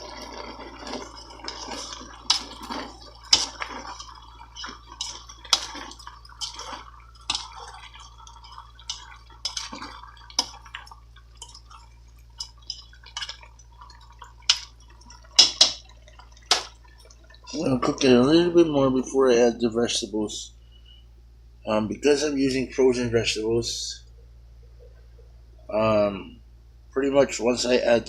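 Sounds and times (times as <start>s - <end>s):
chicken sizzling in a pot: 0.0s - 17.6s
sharp pops of frying oil: 14.4s - 15.9s.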